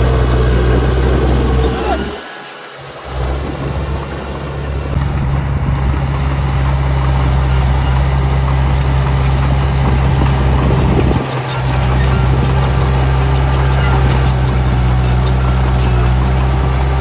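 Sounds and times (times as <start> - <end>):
heavy diesel engine running: 0.0 - 17.0.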